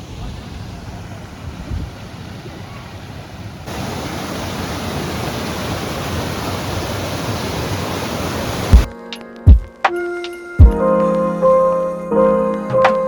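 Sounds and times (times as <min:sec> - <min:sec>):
waterfall rushing: 0:00.0 - 0:08.9.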